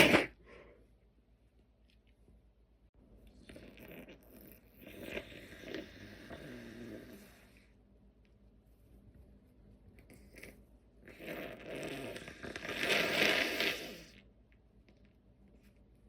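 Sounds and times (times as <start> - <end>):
person blowing nose: 11.1 - 14.1.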